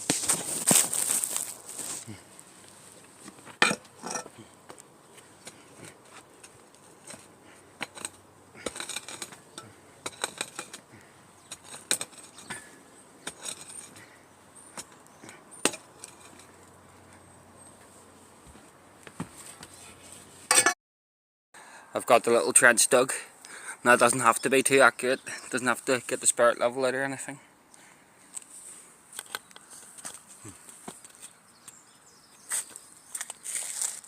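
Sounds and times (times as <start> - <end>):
metal tool digging soil: 0.0 - 2.2, 2.9 - 4.5, 5.2 - 16.7, 32.5 - 34.0.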